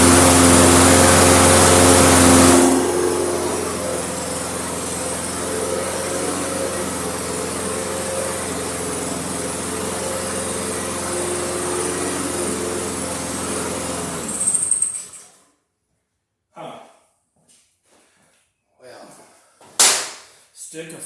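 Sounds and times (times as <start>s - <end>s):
lawn mower engine running: 0.0s - 15.3s.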